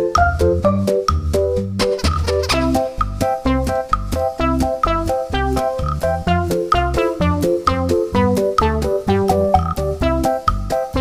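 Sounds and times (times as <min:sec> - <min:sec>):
upbeat keyboard music with beat: 0:00.0 - 0:11.0.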